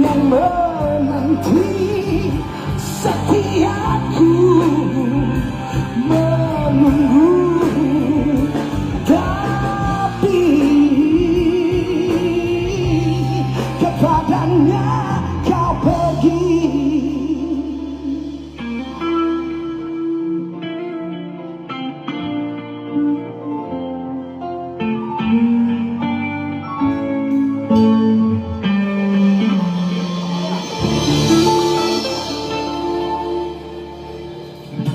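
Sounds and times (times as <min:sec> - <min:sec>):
person singing long bending notes: 0:00.0 - 0:34.9
pop-rock band playing: 0:00.0 - 0:34.9.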